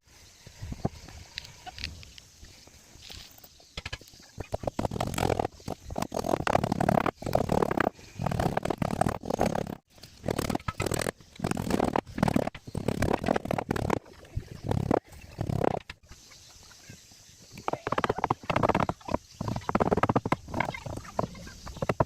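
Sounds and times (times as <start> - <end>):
hand tool rasping on wood: 4.6 - 14.0, 17.6 - 22.0.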